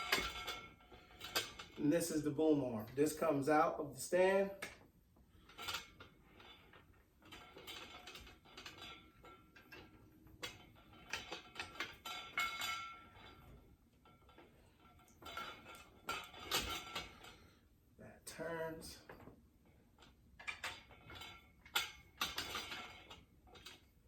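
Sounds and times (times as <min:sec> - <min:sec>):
metal scraping: 0:00.0 - 0:04.1
metal tubes clicking and rattling: 0:00.0 - 0:17.6, 0:18.3 - 0:24.0.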